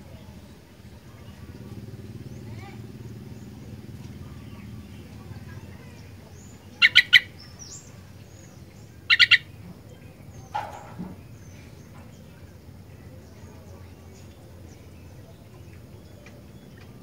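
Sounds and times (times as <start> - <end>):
faint bird chirps: 4.3 - 17.0
bulbul calling sharp notes: 6.8 - 7.8, 9.0 - 9.5.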